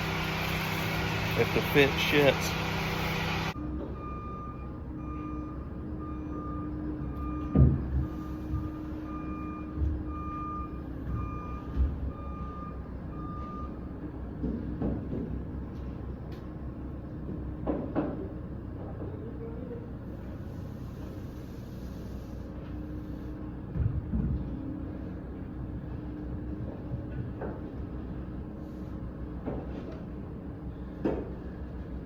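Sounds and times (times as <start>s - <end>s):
reversing alarm beeping: 0.0s - 13.9s
engine hum: 0.0s - 32.0s.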